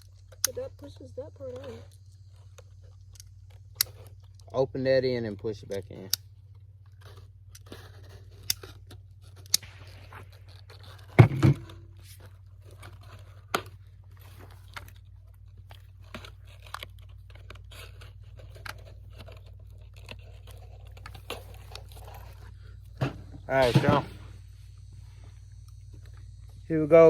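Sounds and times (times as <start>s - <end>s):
cartridges and gear clicking: 9.4s - 11.6s.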